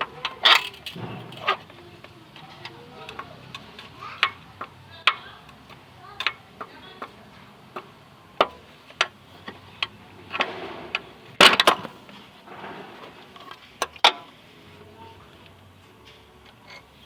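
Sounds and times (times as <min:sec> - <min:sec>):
hand tools clicking on metal: 0:00.0 - 0:12.2, 0:13.0 - 0:14.4, 0:15.3 - 0:17.0.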